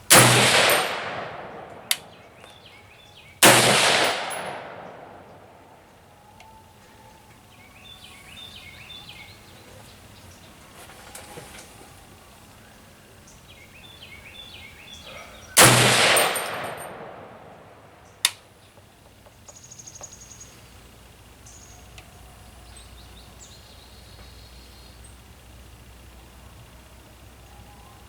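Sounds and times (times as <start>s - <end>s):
rifle shot: 0.1s - 2.5s, 3.4s - 5.8s, 15.6s - 18.3s.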